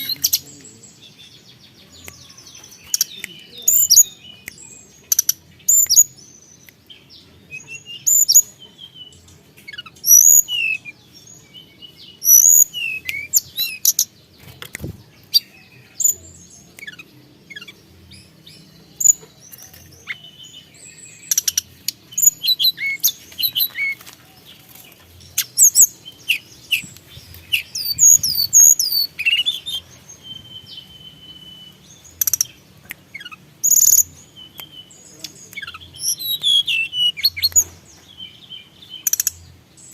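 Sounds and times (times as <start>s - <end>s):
high sharp bird chirps: 9.7s - 10.9s, 12.1s - 17.8s, 25.4s - 39.9s.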